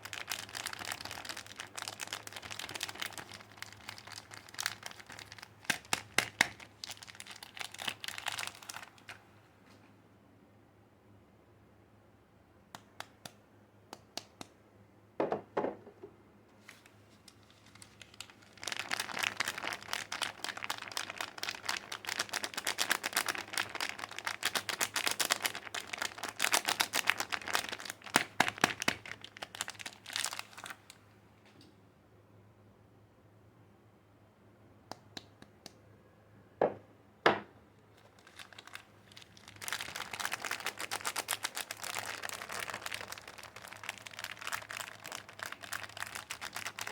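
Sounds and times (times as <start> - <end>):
packaging crinkling and tearing: 0.0 - 9.3, 16.6 - 31.0, 38.0 - 46.9
packaging rustle: 0.0 - 9.3, 16.6 - 31.0, 38.0 - 46.9
packaging clicks: 38.0 - 46.9.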